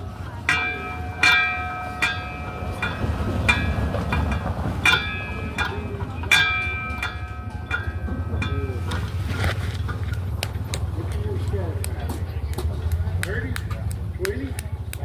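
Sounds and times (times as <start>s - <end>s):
low steady rumble: 0.0s - 15.0s
bell struck repeatedly: 0.4s - 9.2s.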